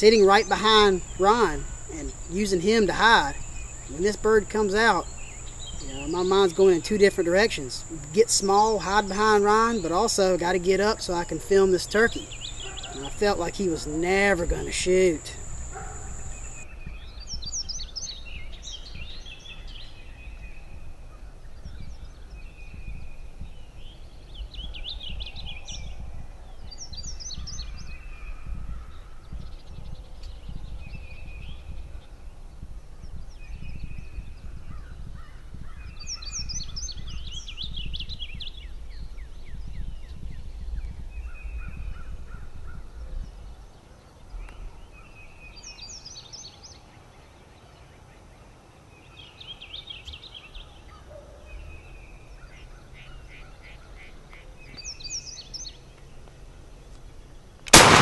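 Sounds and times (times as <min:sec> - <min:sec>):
songbird calls: 0:00.0 - 0:24.0, 0:33.4 - 0:38.7.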